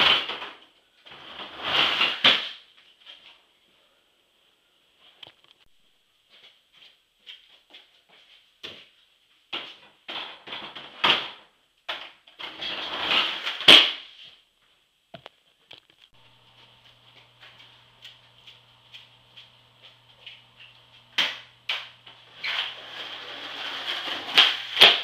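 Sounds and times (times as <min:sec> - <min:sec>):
skateboard wheels rolling: 0:22.4 - 0:25.0.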